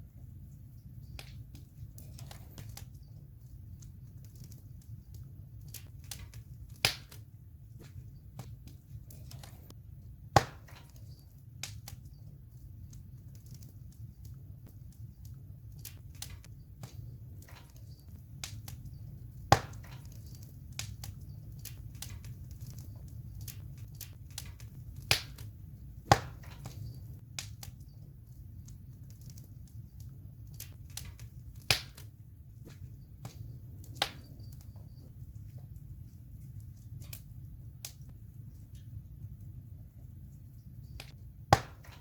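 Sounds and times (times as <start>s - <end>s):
low rush of flame: 0.0s - 42.0s
wood crackling and popping: 0.0s - 42.0s
loud sharp fire pops: 3.8s - 12.3s, 12.9s - 27.9s, 30.5s - 35.1s, 40.9s - 42.0s.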